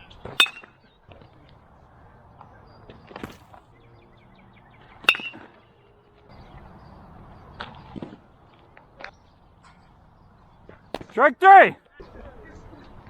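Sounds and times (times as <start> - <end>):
faint field noise: 0.0 - 13.0
baseball smacking into glove: 10.7 - 11.2.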